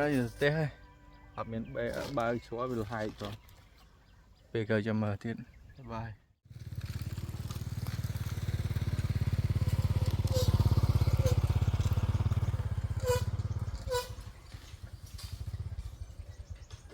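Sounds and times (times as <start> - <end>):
small engine running: 6.5 - 16.9
short squeaks: 10.0 - 14.9.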